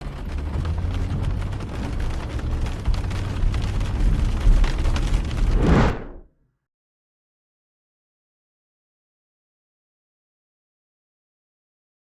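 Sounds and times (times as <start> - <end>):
rain-like crackle: 0.0 - 5.8
heavy low rumble: 0.0 - 6.3.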